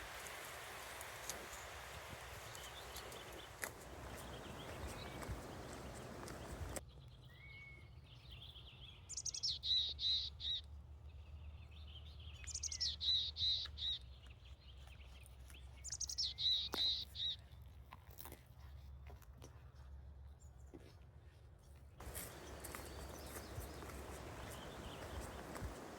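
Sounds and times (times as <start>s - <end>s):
songbird singing: 0.0s - 10.6s, 11.7s - 14.1s, 15.8s - 17.4s, 22.0s - 25.9s.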